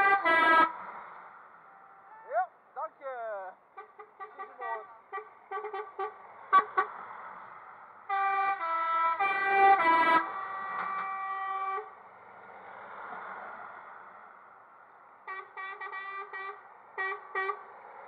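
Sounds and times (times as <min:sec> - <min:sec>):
truck horn toots: 0:03.8 - 0:06.9, 0:08.1 - 0:11.9, 0:15.3 - 0:17.6.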